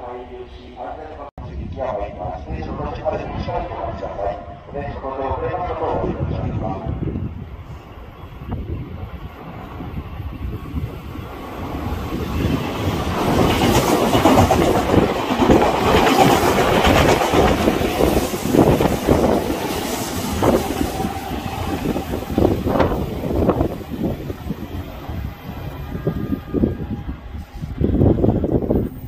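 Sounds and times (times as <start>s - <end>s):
electric train running: 9.4s - 29.0s.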